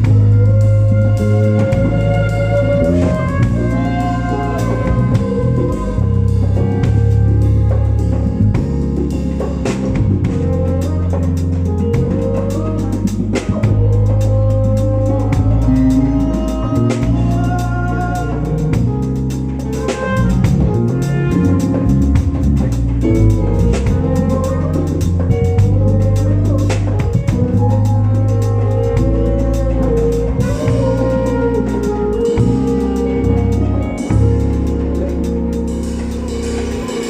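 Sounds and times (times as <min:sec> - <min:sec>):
drum kit steady beat: 0:00.0 - 0:37.0
held bass notes: 0:00.0 - 0:37.0.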